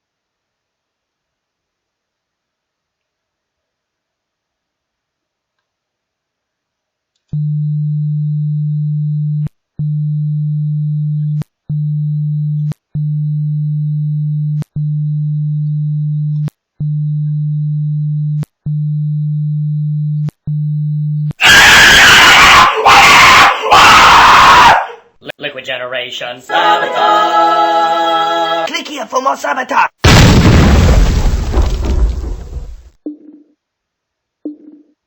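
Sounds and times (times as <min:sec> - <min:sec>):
low sine tone: 0:07.3 - 0:21.3.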